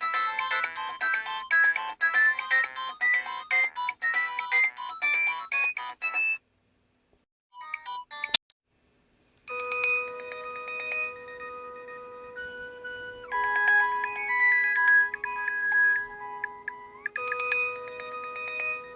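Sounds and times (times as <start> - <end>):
electronic ringtone melody: 9.5 - 18.9
ringtone of long held chords: 9.5 - 18.9.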